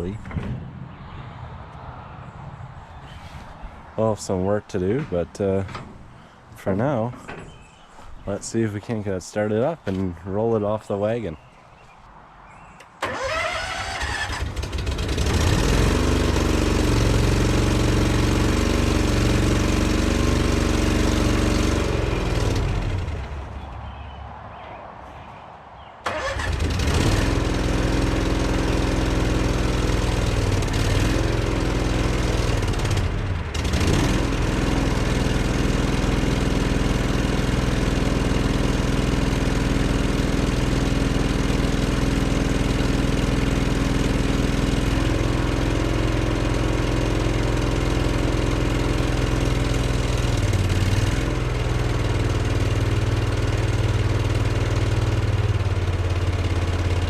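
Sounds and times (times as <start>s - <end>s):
skid steer engine running: 13.0s - 24.0s, 26.0s - 57.0s.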